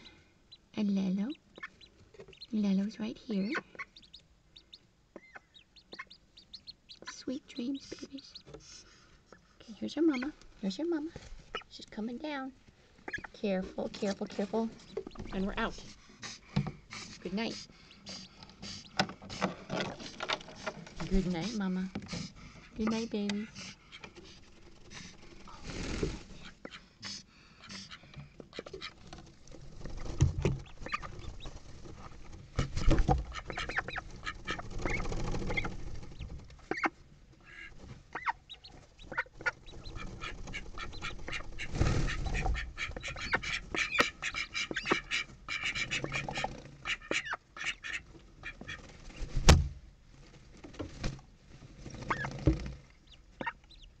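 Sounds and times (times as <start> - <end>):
ducks calling: 36.7 - 48.8.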